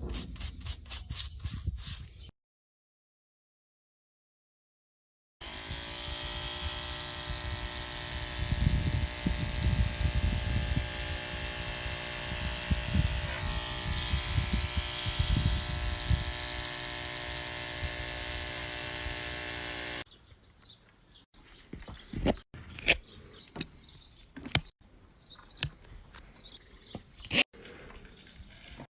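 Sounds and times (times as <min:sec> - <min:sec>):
electric clippers buzzing: 0:05.4 - 0:20.1.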